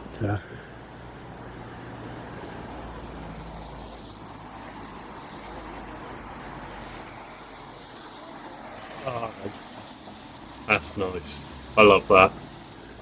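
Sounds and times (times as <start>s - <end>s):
road traffic: 0.0s - 13.0s.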